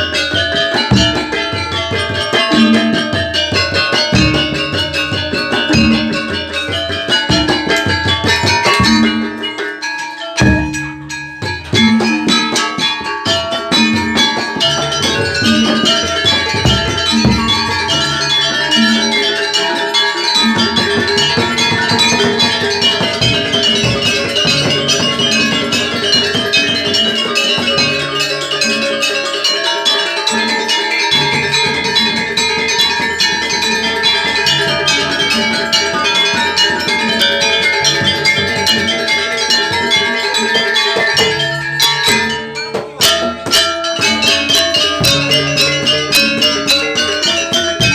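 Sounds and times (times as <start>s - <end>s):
metallophones and gongs ringing: 0.0s - 47.9s
steady drum rhythm: 0.0s - 47.9s.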